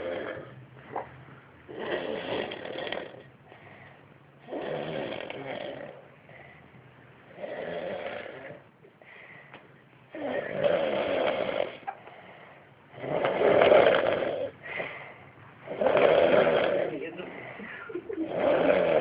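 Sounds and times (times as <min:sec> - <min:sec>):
man snoring loudly: 0:00.0 - 0:00.6, 0:01.7 - 0:03.3, 0:04.4 - 0:06.1, 0:07.3 - 0:08.6, 0:10.1 - 0:11.8, 0:13.0 - 0:14.6, 0:15.6 - 0:17.1, 0:18.2 - 0:19.0
soft breaths: 0:00.0 - 0:19.0.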